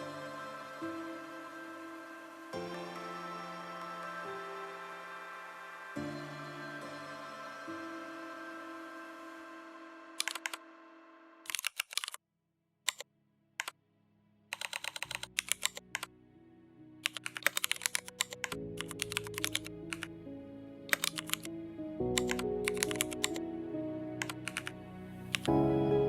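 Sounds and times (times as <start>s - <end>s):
background music: 0.0s - 11.6s, 14.5s - 26.0s
computer keyboard typing: 10.2s - 10.6s, 11.5s - 12.2s, 14.5s - 16.1s, 17.0s - 20.1s, 20.9s - 21.5s, 22.2s - 23.4s, 24.2s - 24.7s, 25.3s - 25.5s.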